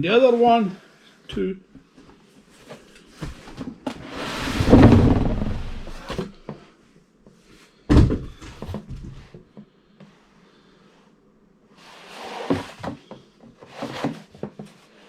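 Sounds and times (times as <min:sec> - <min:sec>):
cardboard rustling scrape: 0:03.4 - 0:06.4
heavy thunk: 0:04.2 - 0:06.4.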